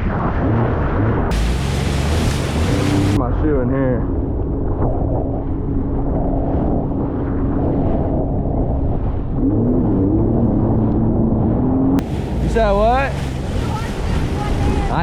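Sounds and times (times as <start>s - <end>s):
jet ski engine running: 1.3s - 3.2s, 12.0s - 15.0s
water rushing: 1.3s - 3.2s, 12.0s - 15.0s
wind buffeting microphone: 1.3s - 15.0s.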